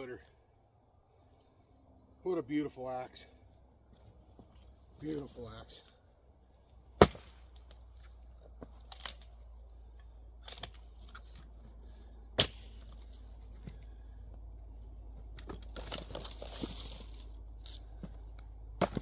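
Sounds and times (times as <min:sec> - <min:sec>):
axe striking firewood: 0:06.9 - 0:08.1, 0:08.7 - 0:09.4, 0:10.4 - 0:11.4, 0:12.3 - 0:14.0, 0:15.4 - 0:19.0.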